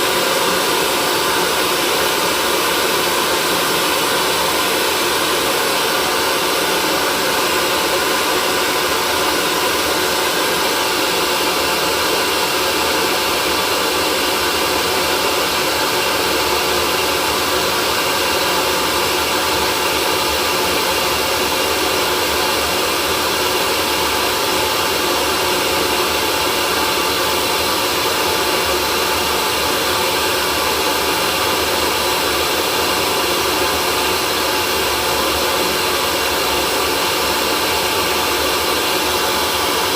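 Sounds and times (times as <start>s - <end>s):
hair dryer running: 0.0s - 39.9s.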